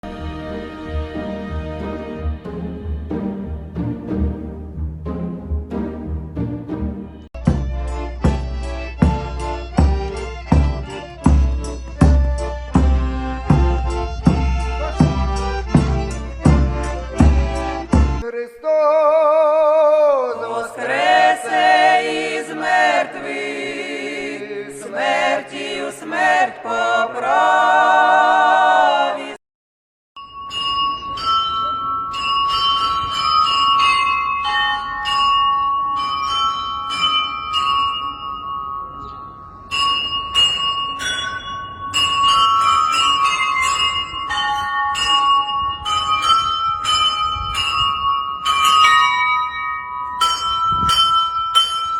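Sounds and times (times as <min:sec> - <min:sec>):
bells ringing: 0:07.4 - 0:18.2, 0:30.2 - 0:51.9.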